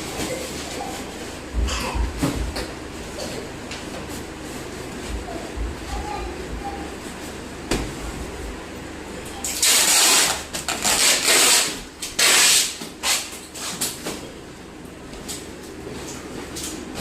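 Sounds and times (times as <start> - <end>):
packing tape tearing off roll: 9.4 - 14.2.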